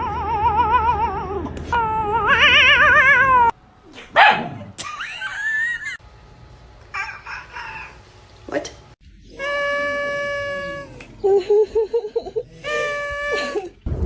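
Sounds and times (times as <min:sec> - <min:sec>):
cat yowling: 0:00.0 - 0:03.6, 0:09.4 - 0:11.0.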